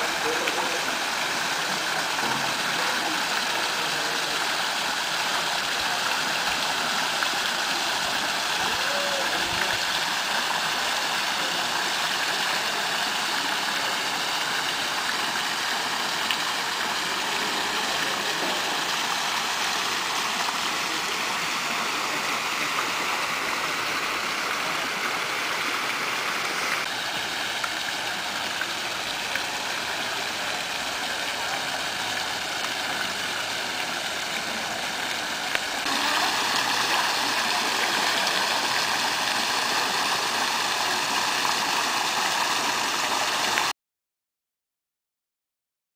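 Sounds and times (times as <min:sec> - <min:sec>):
water pouring down waterfall: 0:00.0 - 0:43.7.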